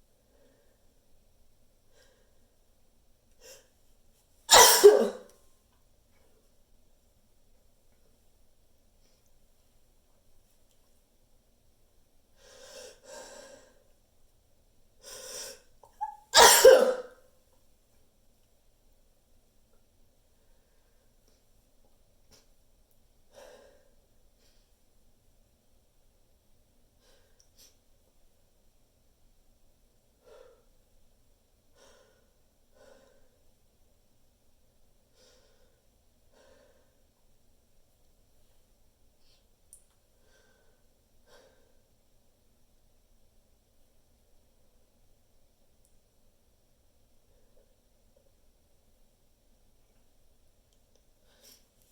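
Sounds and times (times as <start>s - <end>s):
person sneezing: 4.5s - 5.3s, 15.9s - 17.1s
soft breathing: 39.2s - 41.9s, 51.2s - 51.9s.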